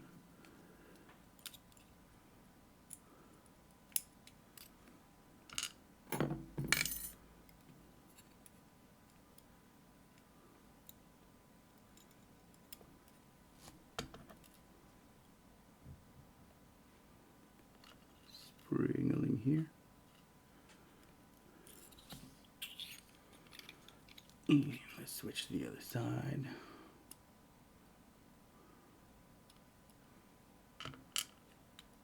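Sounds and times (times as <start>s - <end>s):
metal lock parts clicking and clinking: 11.8s - 12.8s, 21.7s - 24.5s.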